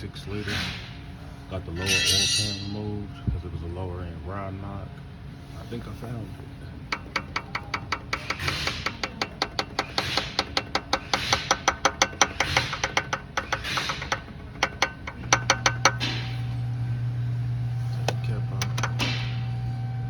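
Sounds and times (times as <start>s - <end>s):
steady low hum: 0.0s - 20.0s
metallic connecting rod clacking: 6.9s - 16.6s, 18.1s - 19.4s.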